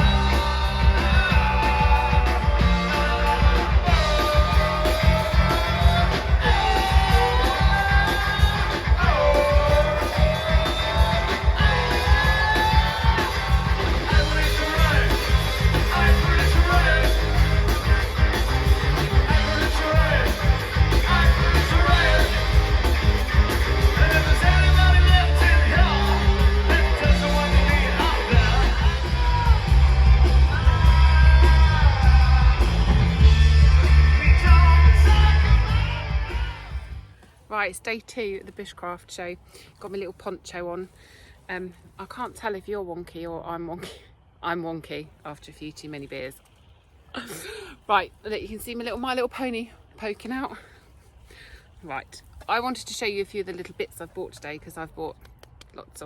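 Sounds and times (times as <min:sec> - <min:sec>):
person singing: 0:00.0 - 0:36.9
strong bass line: 0:00.0 - 0:37.2
guitar: 0:00.0 - 0:37.3.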